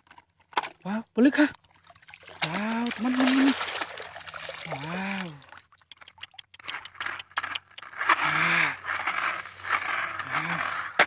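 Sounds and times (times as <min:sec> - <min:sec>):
hard objects scraping and rattling: 0:00.0 - 0:00.8, 0:06.0 - 0:11.0
short voice sounds: 0:02.4 - 0:03.6, 0:04.6 - 0:05.5.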